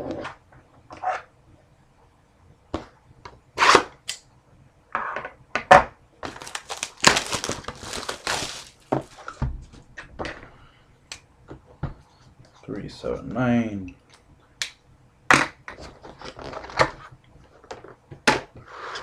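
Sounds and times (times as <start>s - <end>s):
wrapping crinkling and tearing: 6.3s - 8.9s.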